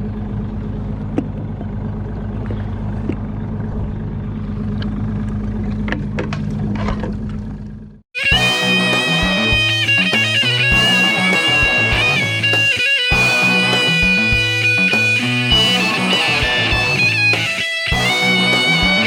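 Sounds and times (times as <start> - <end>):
boat engine running: 0.0 - 19.0
guitar rock music: 8.1 - 19.0.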